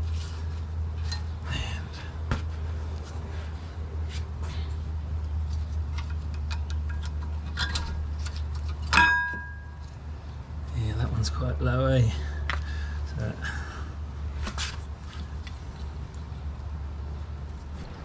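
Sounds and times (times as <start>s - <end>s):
steady low hum: 0.0s - 18.0s
metallic clicks and scrapes: 3.0s - 9.0s.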